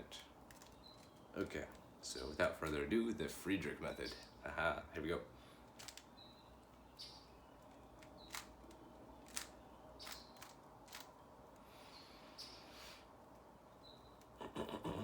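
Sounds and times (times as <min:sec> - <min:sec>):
plastic puzzle cube clicks: 0:08.0 - 0:11.1.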